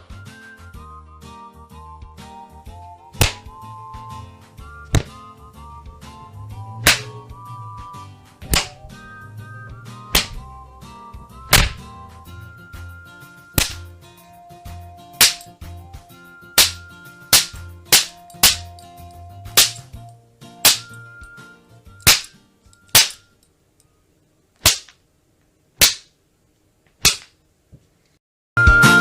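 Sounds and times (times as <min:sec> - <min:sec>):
whip cracks and slaps: 0:03.2 - 0:03.6, 0:04.9 - 0:05.2, 0:06.8 - 0:07.2, 0:08.4 - 0:09.0, 0:10.1 - 0:10.5, 0:11.5 - 0:11.9, 0:13.6 - 0:13.9, 0:15.2 - 0:15.5, 0:16.6 - 0:18.7, 0:19.5 - 0:19.9, 0:20.6 - 0:20.9, 0:22.0 - 0:23.2, 0:24.6 - 0:25.0, 0:25.8 - 0:26.1, 0:27.0 - 0:27.4
faint steady tones: 0:16.1 - 0:25.6.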